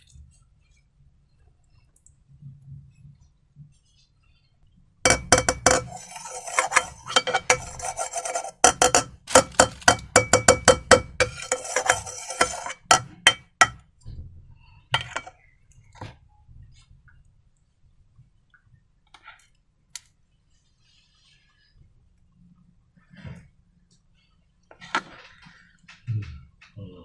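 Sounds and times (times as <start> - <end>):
rasping rubbing noise: 5.1 - 13.6.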